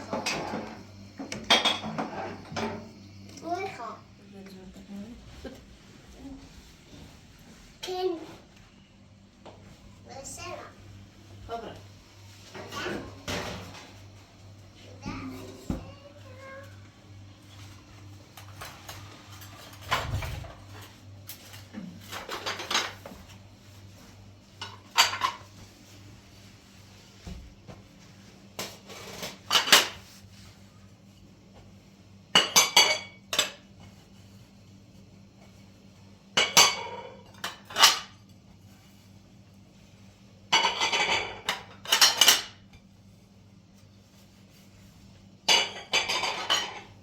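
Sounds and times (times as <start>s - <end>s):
dishes and cutlery clattering: 0.0s - 2.9s, 12.5s - 14.0s, 18.4s - 23.3s, 24.6s - 25.6s, 28.6s - 30.1s, 32.3s - 33.6s, 36.4s - 38.2s, 40.5s - 42.6s, 45.5s - 47.0s.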